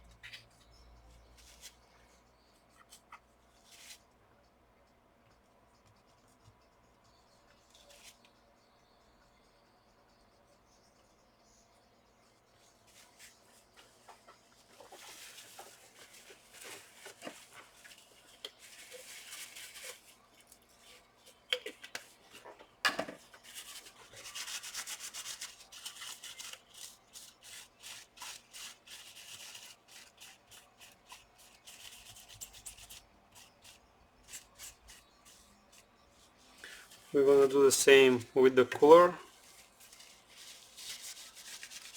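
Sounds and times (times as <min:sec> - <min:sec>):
rubbing strokes on chips: 0:11.4 - 0:21.5, 0:23.4 - 0:41.9.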